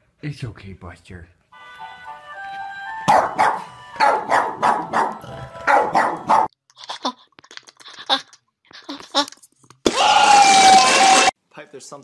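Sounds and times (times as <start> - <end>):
dog barking: 3.1 - 6.5.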